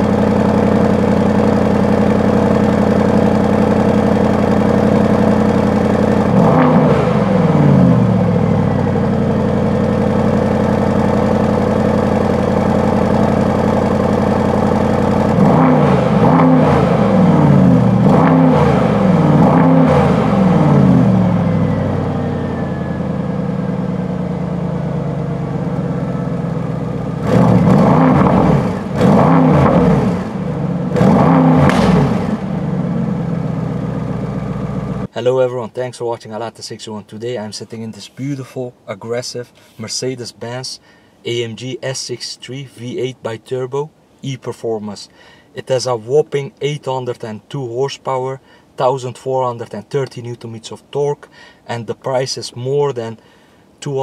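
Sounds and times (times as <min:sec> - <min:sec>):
car engine idling and revving: 0:00.0 - 0:35.1.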